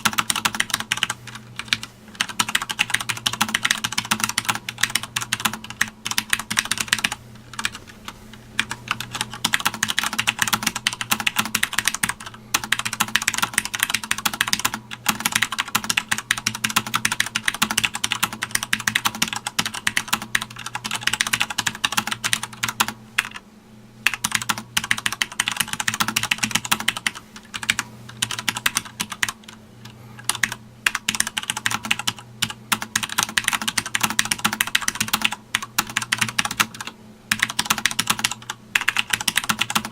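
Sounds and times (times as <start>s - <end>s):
mechanical keyboard typing: 0.0s - 23.4s, 24.0s - 39.9s
faint low hum: 0.0s - 39.9s.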